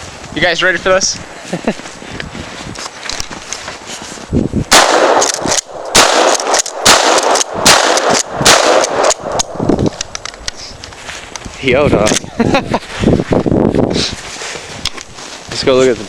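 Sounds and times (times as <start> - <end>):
gunshots: 4.7 - 9.6.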